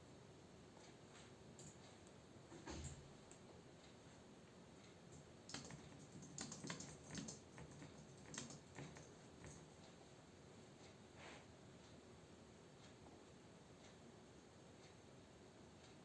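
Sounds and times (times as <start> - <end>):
computer keyboard typing: 1.6 - 1.8, 5.1 - 9.8.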